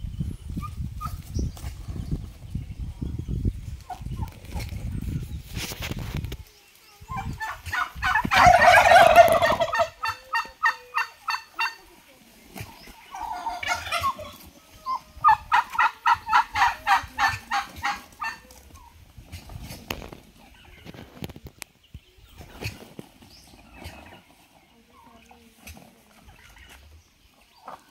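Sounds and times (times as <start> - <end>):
turkeys gobbling: 7.1 - 21.1, 22.3 - 26.8, 27.4 - 27.9.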